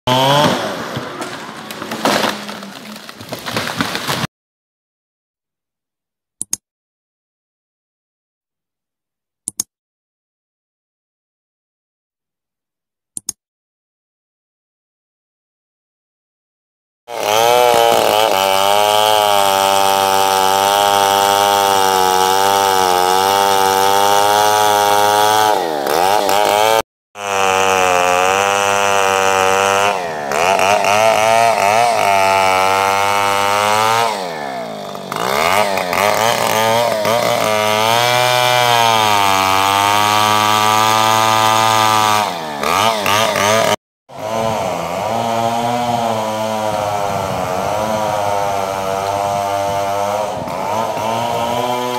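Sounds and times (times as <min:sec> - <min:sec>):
chainsaw running at high revs: 0:00.1 - 0:04.3, 0:17.1 - 0:51.9.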